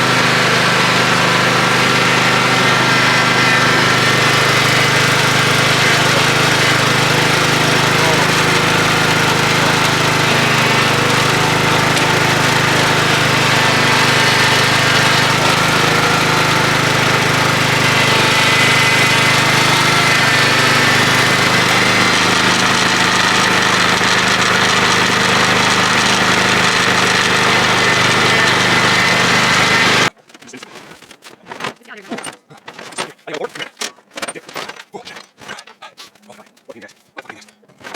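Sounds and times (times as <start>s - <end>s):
small petrol engine running: 0.0s - 30.1s.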